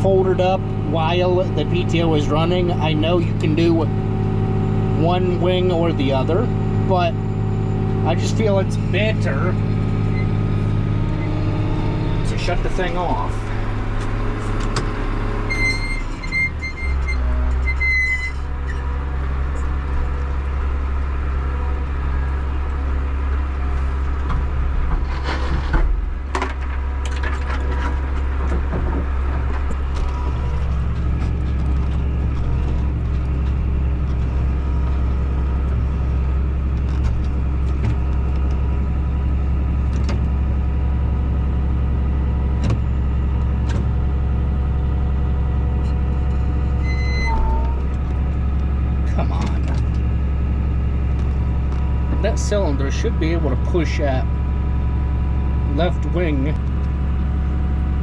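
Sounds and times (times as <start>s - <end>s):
tractor diesel engine running: 0.0s - 58.0s
short beep: 46.8s - 47.8s.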